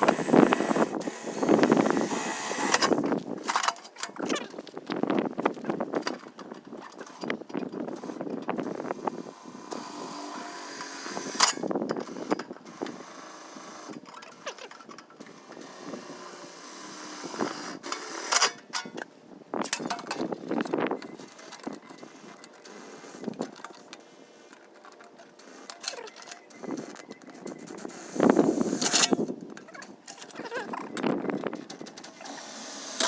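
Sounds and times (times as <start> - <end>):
tool clicking and scraping on steel pail: 0.0 - 8.5, 17.3 - 32.4.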